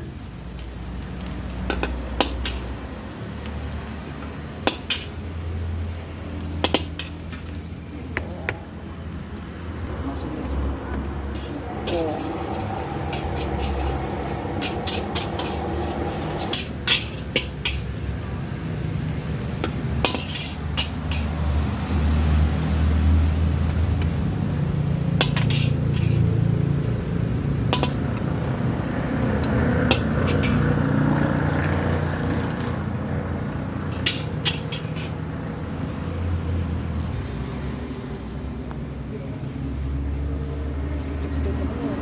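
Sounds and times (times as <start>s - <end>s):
metal spatula clanking on wok: 1.6s - 2.8s, 4.6s - 5.3s, 6.5s - 7.5s, 11.3s - 18.0s, 19.6s - 21.4s, 25.1s - 26.4s, 27.6s - 28.4s, 29.4s - 31.7s, 33.8s - 35.2s.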